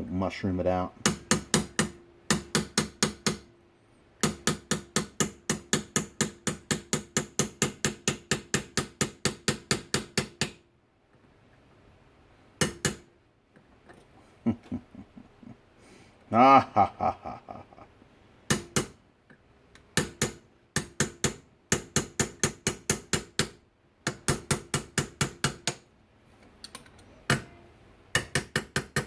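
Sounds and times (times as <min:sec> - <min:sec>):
hammer tapping metal: 0:01.0 - 0:03.5, 0:04.2 - 0:10.6, 0:12.6 - 0:13.1, 0:18.5 - 0:19.0, 0:19.8 - 0:25.9, 0:26.7 - 0:29.0.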